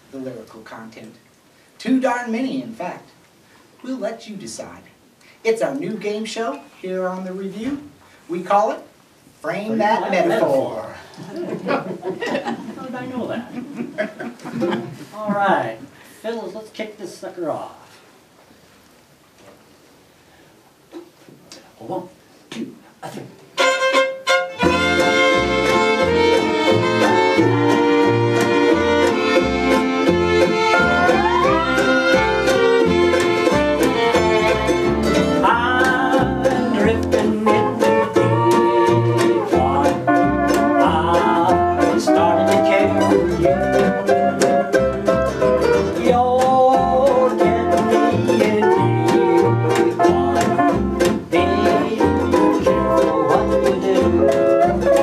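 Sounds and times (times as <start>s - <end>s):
acoustic guitar: 23.0s - 55.0s
banjo: 23.6s - 55.0s
bowed string melody: 23.6s - 55.0s
bass beat: 24.6s - 55.0s.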